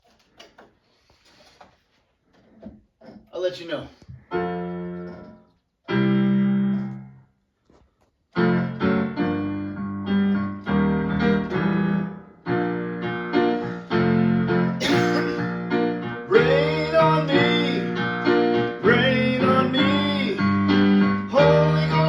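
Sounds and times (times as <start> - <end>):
keyboard playing gospel chords: 4.3 - 7.1, 8.4 - 22.0.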